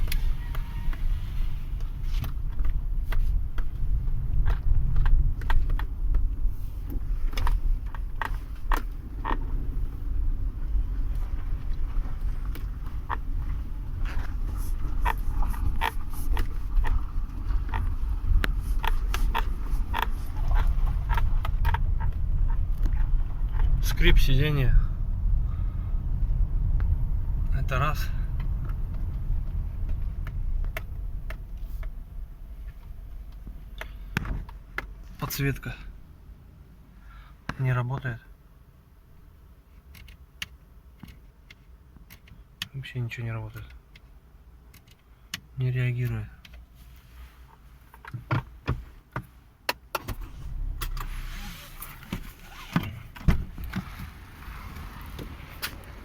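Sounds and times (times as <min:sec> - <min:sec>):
rustle: 0:00.0 - 0:24.5, 0:44.8 - 0:56.0
low steady rumble: 0:00.0 - 0:56.0
sharp clicks in car cabin: 0:01.8 - 0:09.8, 0:11.1 - 0:24.1, 0:28.3 - 0:35.5, 0:39.7 - 0:46.7, 0:47.5 - 0:51.2, 0:51.8 - 0:56.0
clicks and knocks of handling: 0:02.1 - 0:06.3, 0:39.8 - 0:42.8, 0:43.5 - 0:46.7.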